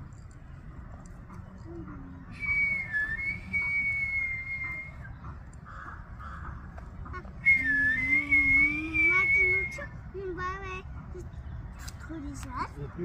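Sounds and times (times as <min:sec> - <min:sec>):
high whistle: 0:02.4 - 0:05.1, 0:07.4 - 0:09.9.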